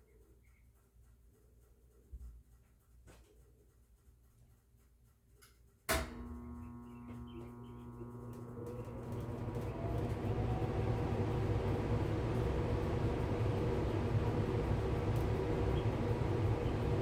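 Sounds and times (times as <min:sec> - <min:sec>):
blower motor humming: 0:05.9 - 0:17.0.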